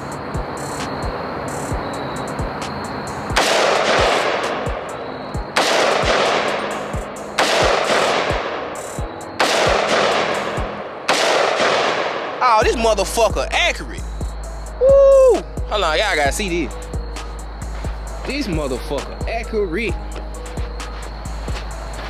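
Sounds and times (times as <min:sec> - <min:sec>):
music with thumping beat: 0:00.0 - 0:11.4, 0:12.6 - 0:22.0
gunshots with echo: 0:01.7 - 0:12.6.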